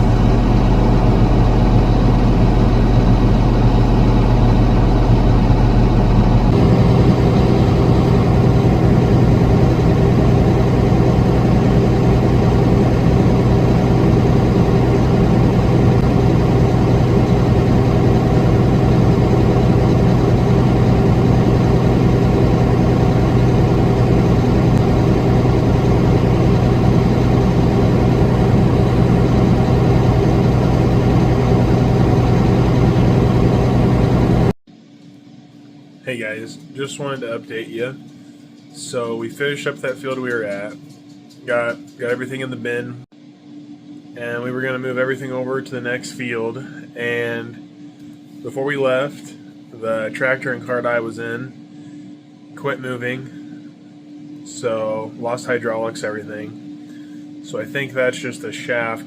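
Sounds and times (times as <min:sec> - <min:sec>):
heavy diesel machinery engine: 0:00.0 - 0:34.6.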